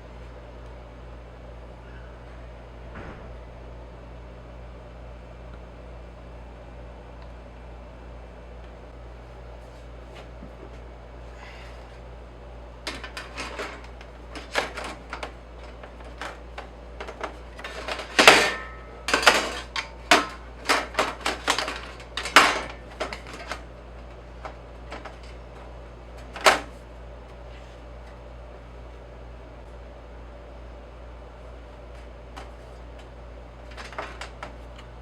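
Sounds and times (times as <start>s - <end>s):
steady low hum: 0.0s - 35.0s
hard objects clicking and knocking: 12.9s - 26.7s.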